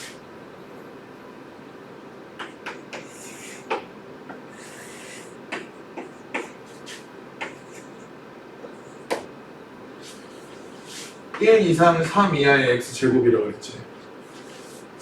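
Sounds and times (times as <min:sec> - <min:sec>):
room hum: 0:00.0 - 0:15.0
pen scratching on paper: 0:03.0 - 0:03.6.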